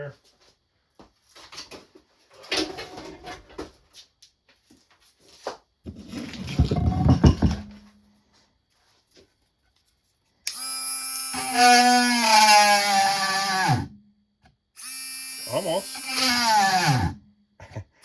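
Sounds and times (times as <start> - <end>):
knocks handling wood: 5.9 - 8.0
rotary tool motor whining: 10.5 - 13.9, 14.8 - 17.2.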